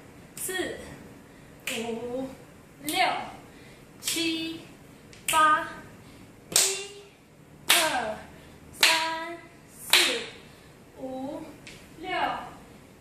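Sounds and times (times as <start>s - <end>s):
hand claps: 7.7s - 8.0s, 8.8s - 9.1s, 9.9s - 10.2s.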